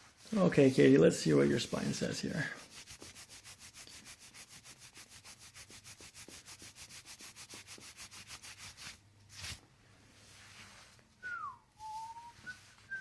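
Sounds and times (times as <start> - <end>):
fast rubbing strokes: 0.0 - 9.6.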